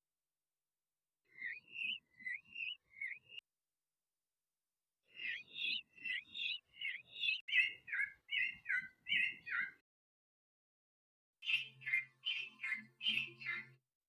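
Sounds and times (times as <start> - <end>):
bird chirping: 1.3 - 3.4, 5.1 - 9.8, 11.4 - 13.8.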